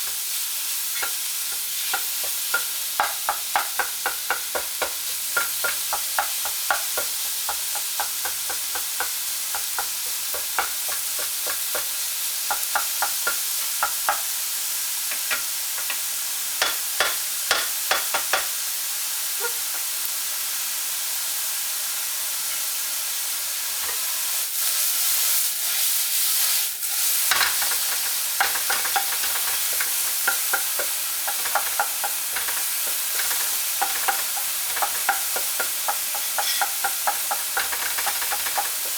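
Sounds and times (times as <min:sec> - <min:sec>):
spatula clicking and scraping pan: 0:00.0 - 0:14.3, 0:15.1 - 0:18.5, 0:26.8 - 0:38.9
chicken sizzling in oil: 0:00.0 - 0:38.9.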